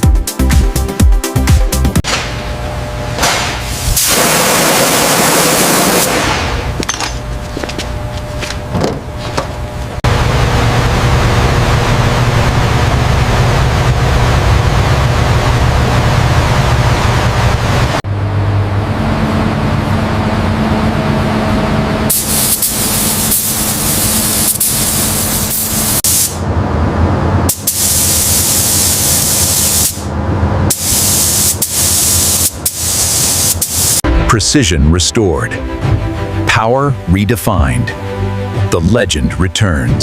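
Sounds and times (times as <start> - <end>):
loud hissing spray: 3.8 - 6.3, 22.1 - 26.4, 27.5 - 30.0, 30.7 - 34.0.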